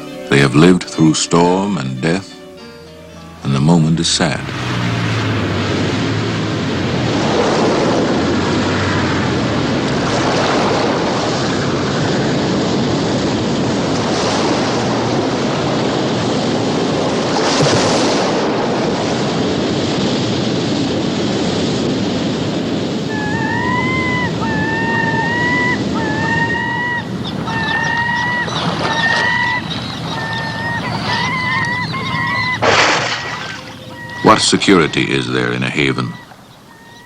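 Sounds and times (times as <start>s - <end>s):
sea waves: 0.0s - 37.0s
wind: 0.0s - 37.0s
short high calls: 23.1s - 37.0s.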